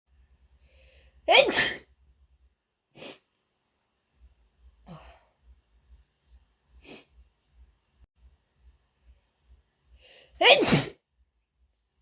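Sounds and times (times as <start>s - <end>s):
woman breathing softly: 0.6s - 1.2s, 9.9s - 10.4s.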